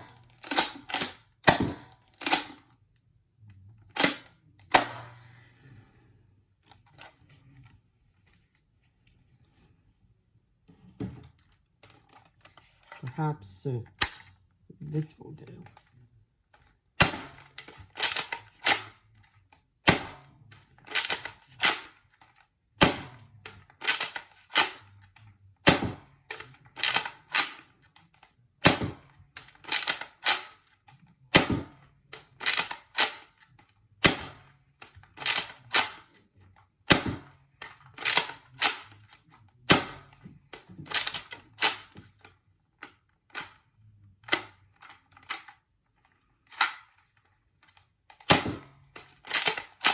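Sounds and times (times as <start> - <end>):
toy blaster firing clacks: 20.9 - 22.0, 29.6 - 30.7, 32.3 - 33.3, 49.1 - 49.9.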